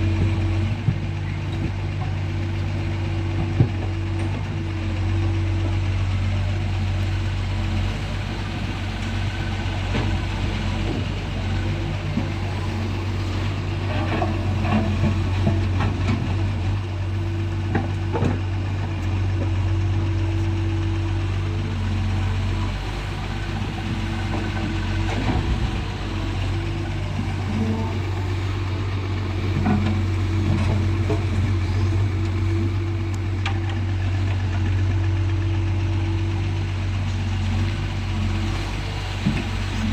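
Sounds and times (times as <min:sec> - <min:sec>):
excavator diesel engine running: 0:00.0 - 0:39.9
knocks and clatter of digging: 0:09.8 - 0:16.8, 0:23.7 - 0:35.4.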